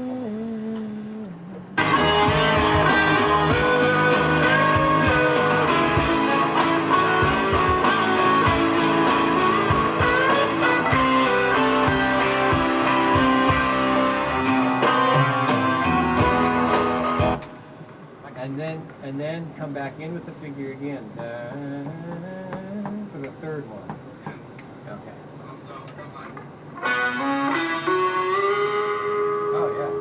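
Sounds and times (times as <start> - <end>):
blues-rock band playing: 1.8 - 17.6, 26.8 - 30.0.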